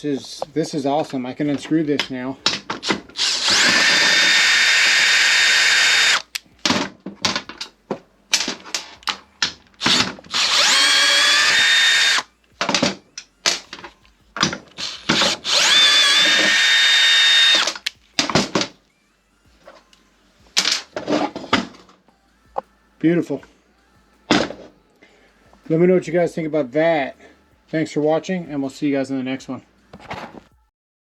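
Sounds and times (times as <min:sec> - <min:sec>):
power drill running: 0:00.0 - 0:07.8, 0:08.4 - 0:18.7
handling clicks and knocks: 0:06.2 - 0:10.4.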